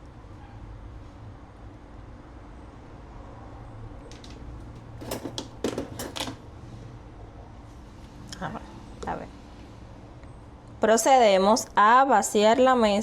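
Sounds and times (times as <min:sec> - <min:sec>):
utensils clicking and knocking: 0:04.8 - 0:06.4.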